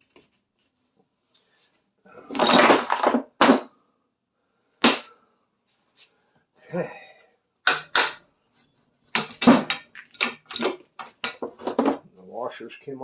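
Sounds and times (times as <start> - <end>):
small metal parts clattering: 2.3 - 3.7, 9.1 - 12.1.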